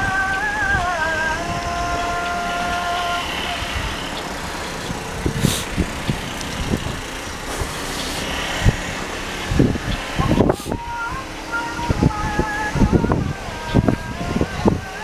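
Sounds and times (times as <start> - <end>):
road traffic noise: 0.0 - 15.0
dull low thumps: 3.6 - 15.0.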